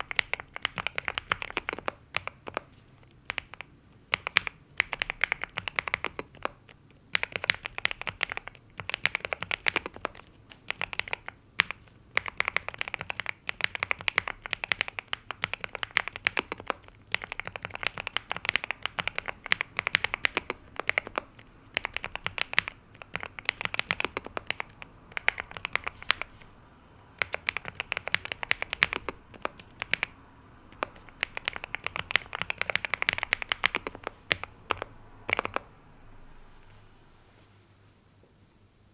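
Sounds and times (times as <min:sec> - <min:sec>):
mechanical keyboard typing: 0:00.0 - 0:26.5, 0:27.1 - 0:35.8.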